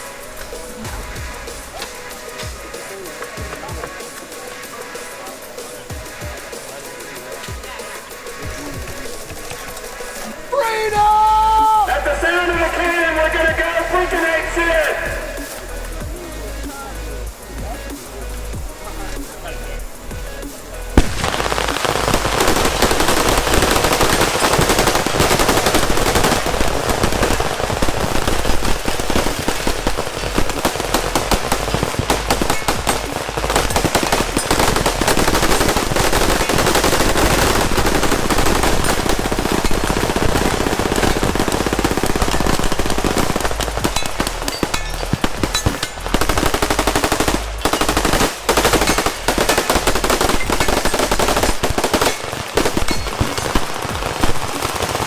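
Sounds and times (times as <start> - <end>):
rapid gunfire barrage: 20.4 - 55.0.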